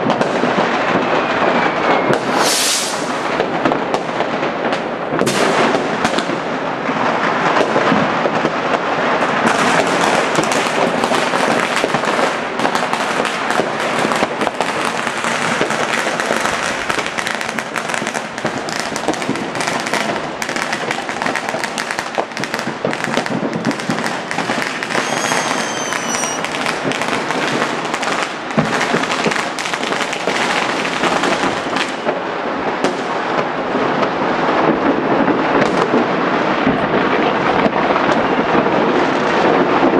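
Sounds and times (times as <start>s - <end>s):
fireworks crackling and banging: 0.0s - 39.9s
high firework whistle: 0.7s - 3.5s, 24.6s - 26.8s.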